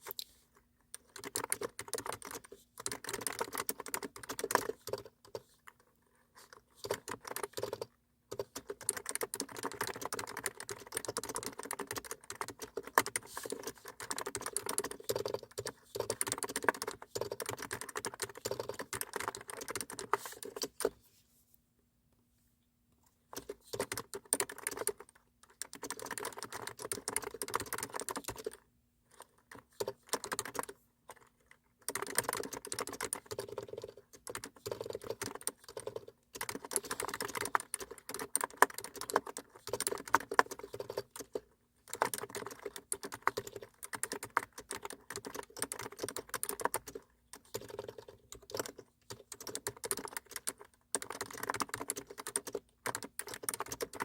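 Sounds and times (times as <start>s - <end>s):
typing on computer keyboard: 0.9s - 5.8s, 6.4s - 21.0s, 23.3s - 54.0s.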